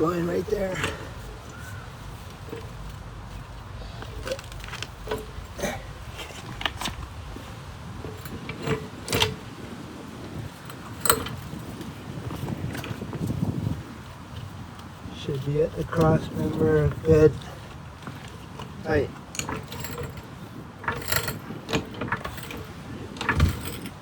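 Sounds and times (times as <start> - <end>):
metallic clinks of car jack: 3.9 - 7.2, 7.9 - 9.5, 10.3 - 13.0, 18.0 - 24.0.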